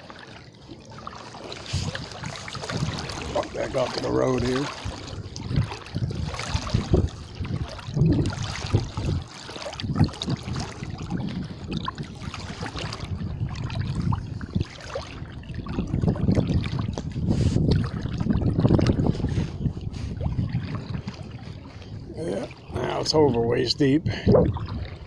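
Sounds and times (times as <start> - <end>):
wading through water: 0.0 - 25.0.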